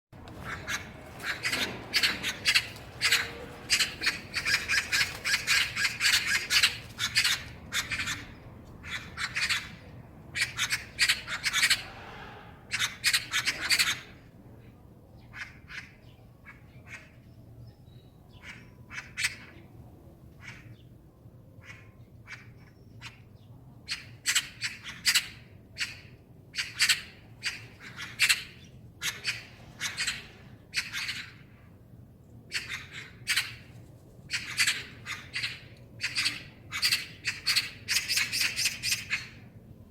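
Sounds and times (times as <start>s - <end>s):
magpies chattering: 0.3s - 9.8s.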